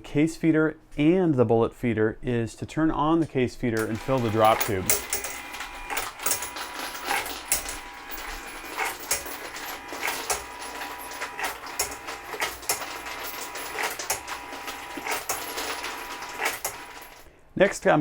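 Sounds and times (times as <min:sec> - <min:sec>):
brass cases clinking: 0:03.8 - 0:17.3
case feeder humming: 0:03.8 - 0:17.3.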